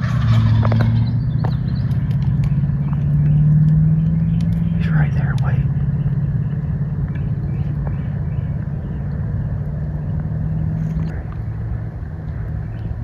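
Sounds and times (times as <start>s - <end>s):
low engine hum: 0.0s - 13.0s.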